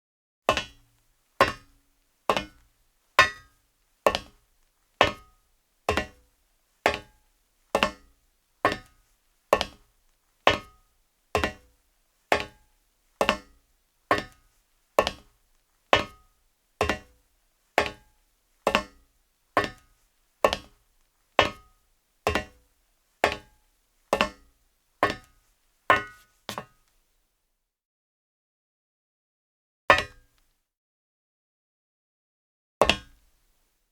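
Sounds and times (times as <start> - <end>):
footsteps on metal: 0.5 - 4.4, 5.0 - 6.3, 6.9 - 7.2, 7.8 - 17.2, 17.8 - 20.8, 21.4 - 26.8.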